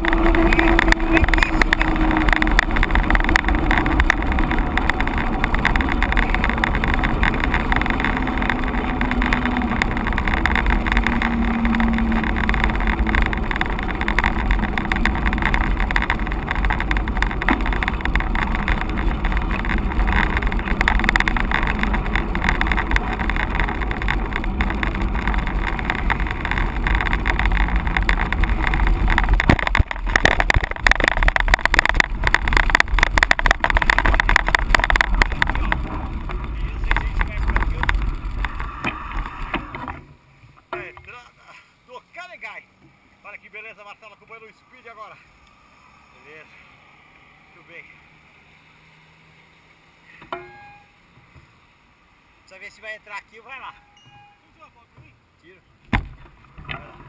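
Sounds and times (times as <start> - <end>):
wind on microphone: 0.0 - 40.1
mountain bike rolling: 0.0 - 54.7.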